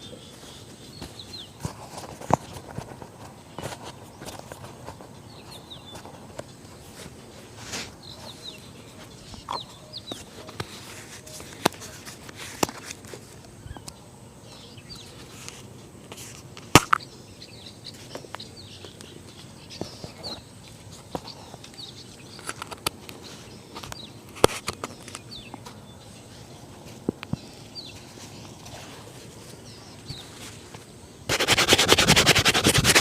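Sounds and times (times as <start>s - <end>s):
birds chirping: 0.0s - 33.0s.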